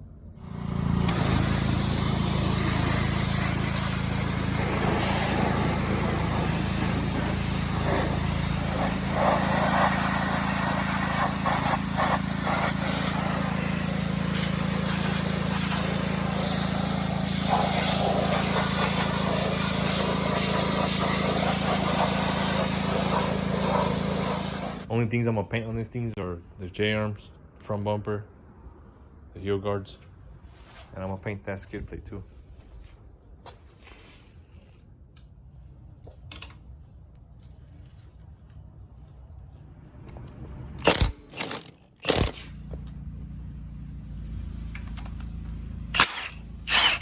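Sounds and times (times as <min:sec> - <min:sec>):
pressure washer motor droning: 0:00.4 - 0:24.9
water jet spraying: 0:01.0 - 0:24.9.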